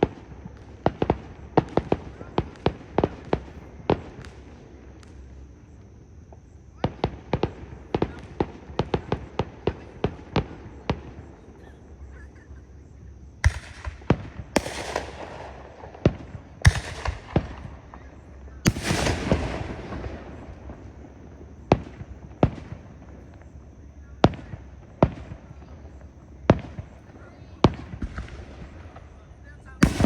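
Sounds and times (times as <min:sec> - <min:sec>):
firework crackling: 0:00.0 - 0:30.0
firework shells bursting: 0:13.4 - 0:30.0.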